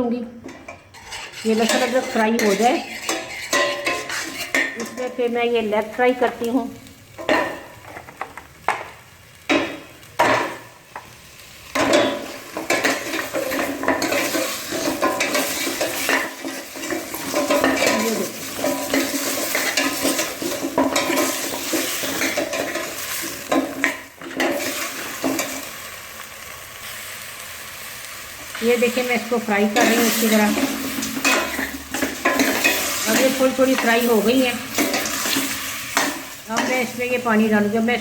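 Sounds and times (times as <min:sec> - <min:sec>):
spoon scraping against pot: 0:00.4 - 0:05.2, 0:11.8 - 0:25.7, 0:29.7 - 0:36.9
meat sizzling in hot fat: 0:00.9 - 0:38.0.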